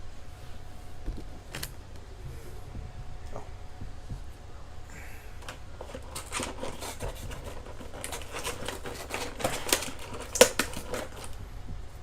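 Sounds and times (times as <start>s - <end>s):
sharp packaging snap: 5.4s - 11.4s
plastic and cardboard crackling: 5.4s - 12.0s.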